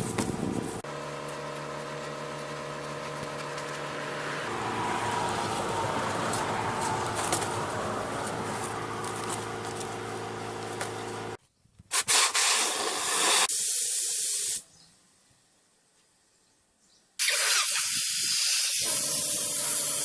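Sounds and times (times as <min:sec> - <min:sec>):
loud hiss of air: 0:11.9 - 0:14.8, 0:17.2 - 0:20.0
electric air pump humming: 0:17.2 - 0:20.0.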